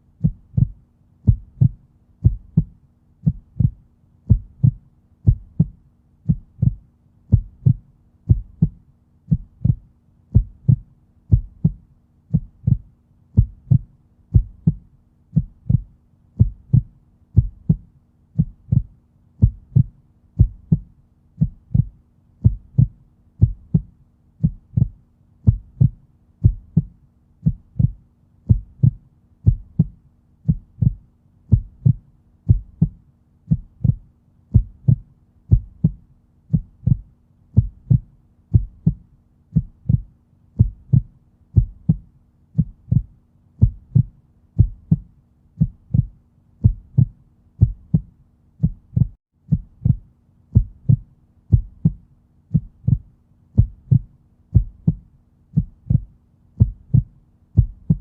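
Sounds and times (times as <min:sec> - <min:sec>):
heartbeat double thuds: 0:00.2 - 0:58.0.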